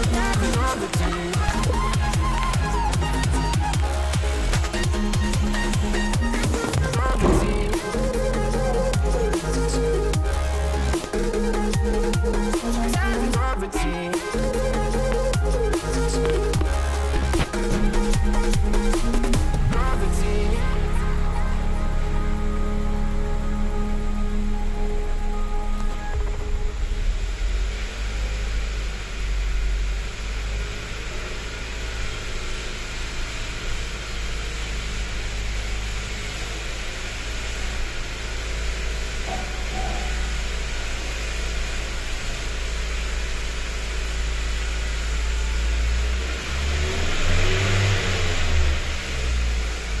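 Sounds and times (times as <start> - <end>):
car engine running and revving: 0.0 - 50.0.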